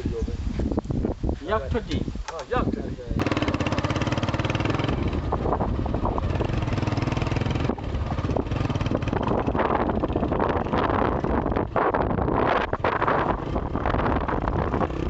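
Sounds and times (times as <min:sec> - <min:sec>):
motorcycle engine running: 0:03.2 - 0:15.0.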